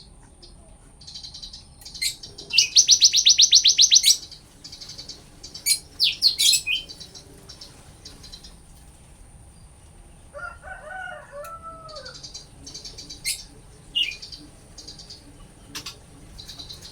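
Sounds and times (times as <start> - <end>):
birdsong: 0.0 - 16.9
high buzzy bird chattering: 0.3 - 8.8, 11.8 - 16.9
sharp downswept bird calls: 1.0 - 8.6, 10.8 - 16.9
low bird warbling: 1.1 - 8.6, 11.3 - 16.9.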